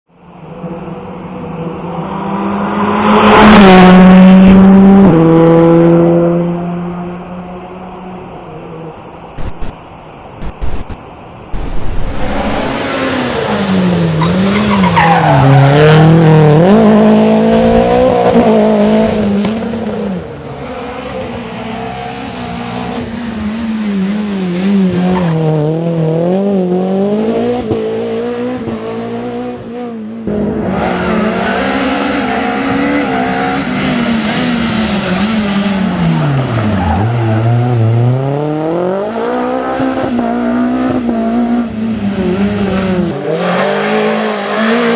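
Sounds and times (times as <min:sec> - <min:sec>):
rally car engine revving: 0:09.4 - 0:09.7, 0:10.4 - 0:11.0, 0:11.6 - 0:44.9.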